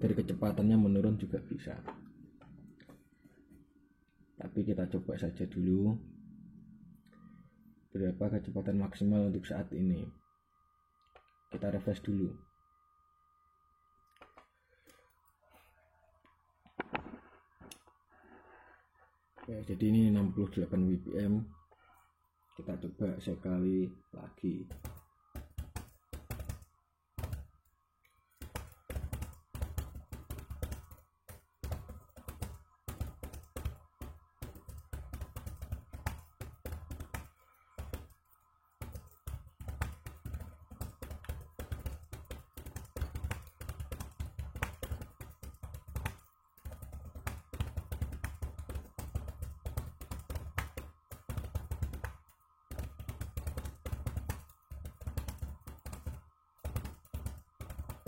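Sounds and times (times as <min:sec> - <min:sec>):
fast typing on a keyboard: 0:24.7 - 0:27.4, 0:28.4 - 0:58.0.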